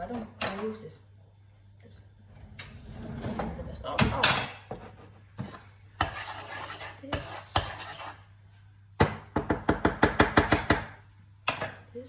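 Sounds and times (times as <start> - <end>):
food scraping and rustling: 4.7 - 8.3
knife chopping on cutting board: 6.0 - 8.2.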